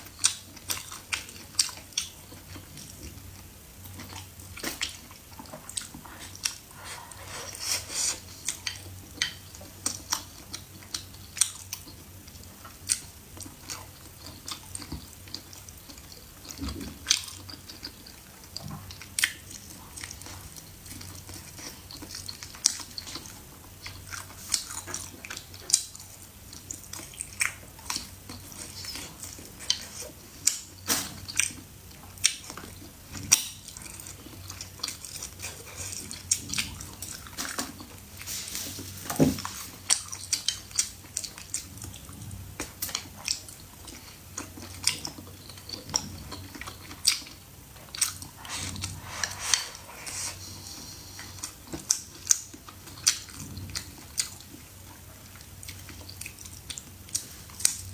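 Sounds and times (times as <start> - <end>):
person chewing and biting: 38.8 - 54.6.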